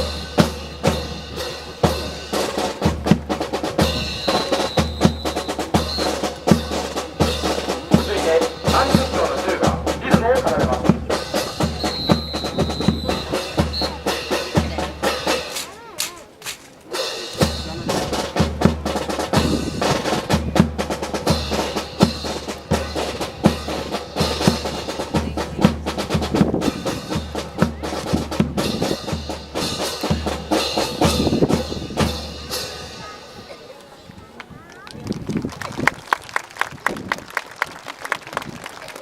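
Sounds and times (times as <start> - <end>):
bass drum beating: 0.0 - 15.6, 17.4 - 32.5.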